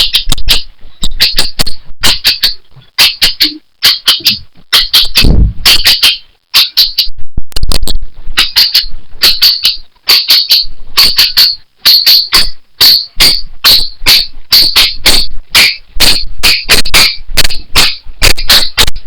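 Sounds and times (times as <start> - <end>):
low thump: 5.2 - 5.6
low rumble: 5.2 - 5.7.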